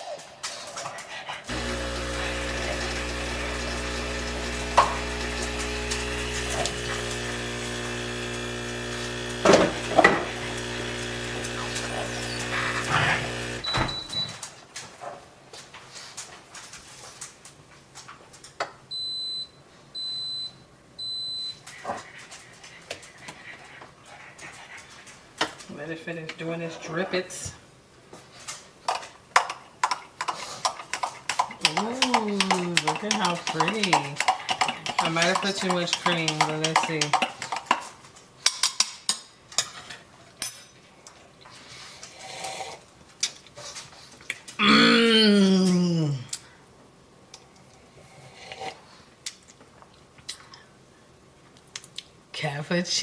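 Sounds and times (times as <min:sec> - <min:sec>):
coffee machine beeping: 0:01.5 - 0:14.4
spoon clinking against a cup: 0:31.6 - 0:37.3.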